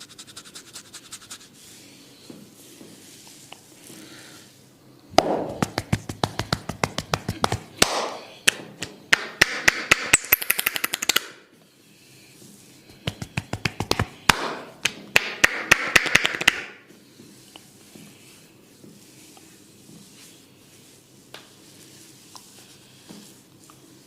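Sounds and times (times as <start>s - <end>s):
rustle of hair: 17.2s - 24.0s.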